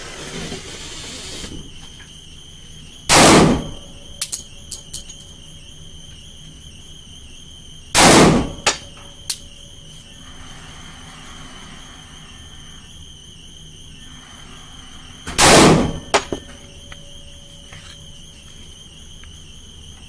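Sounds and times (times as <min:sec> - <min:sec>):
pistol shots: 0:03.1 - 0:03.8, 0:08.0 - 0:08.8, 0:15.3 - 0:16.3.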